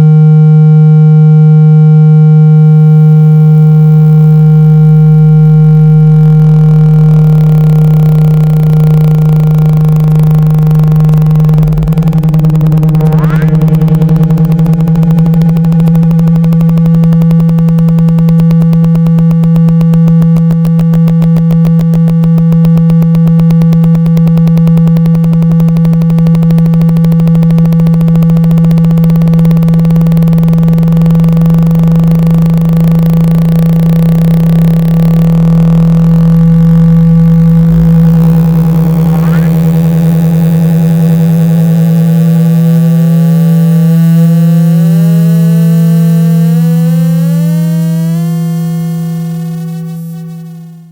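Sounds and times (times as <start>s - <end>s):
synthesized test tone: 2.3s - 50.9s
rapid even pulsing: 5.4s - 42.1s
rising sweep: 8.5s - 22.3s.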